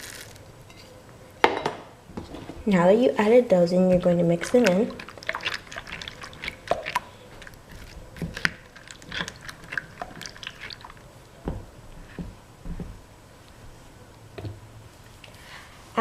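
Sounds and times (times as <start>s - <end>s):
slime squishing with crackling: 3.8s - 12.4s.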